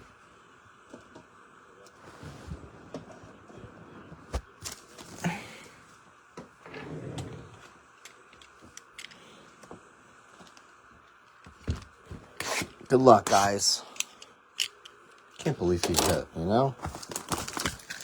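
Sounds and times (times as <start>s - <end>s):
cardboard and plastic rustling: 1.9s - 5.3s, 15.3s - 18.0s.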